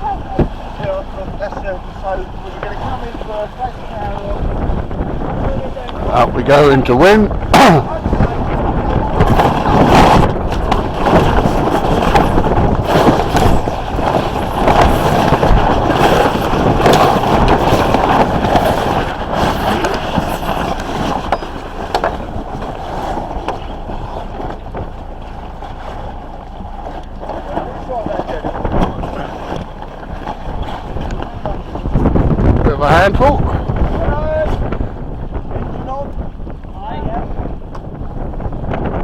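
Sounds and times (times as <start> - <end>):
sail canvas flapping: 0.0 - 39.0
wind buffeting microphone: 0.0 - 39.0.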